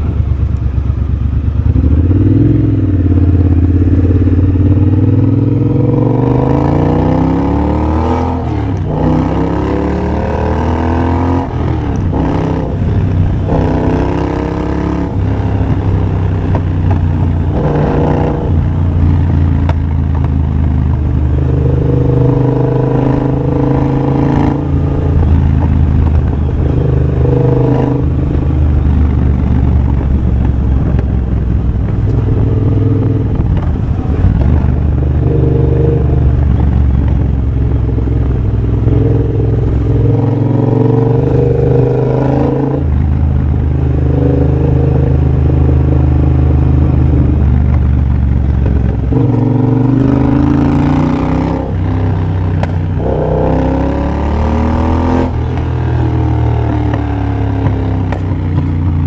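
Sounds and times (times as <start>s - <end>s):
loud motorcycle engine riding: 0.0s - 59.0s.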